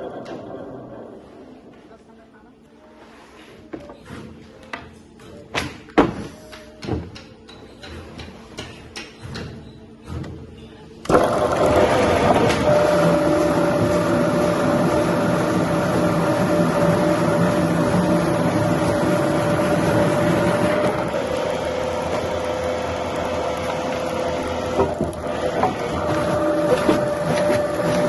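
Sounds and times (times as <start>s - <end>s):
wood-cutting machinery humming: 11.1s - 28.0s.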